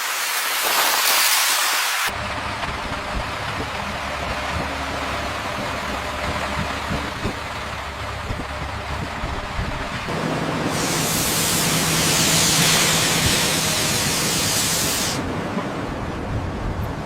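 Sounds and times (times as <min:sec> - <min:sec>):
engine hum: 0:02.1 - 0:17.0
loud spraying hiss: 0:10.6 - 0:15.3.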